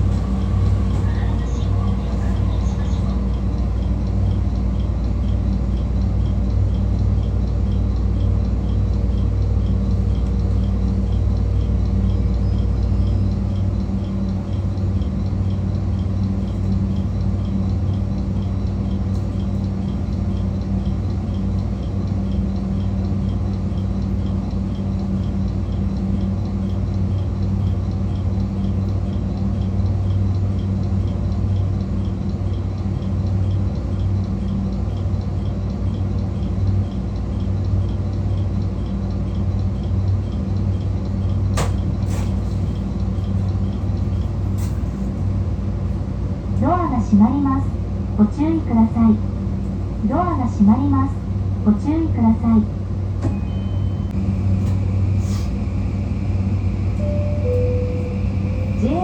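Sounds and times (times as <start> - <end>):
deep rumble: 0.0 - 26.4
train equipment humming: 0.0 - 59.0
faint regular ticking: 1.4 - 41.4.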